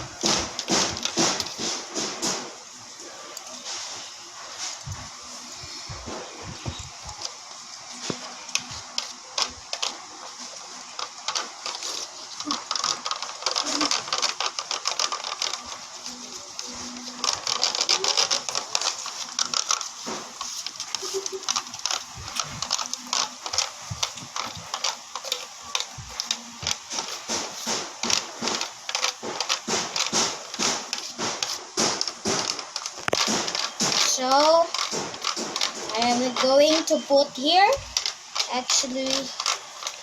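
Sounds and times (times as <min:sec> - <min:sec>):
slime stirred with sticky clicks: 0:08.0 - 0:40.0.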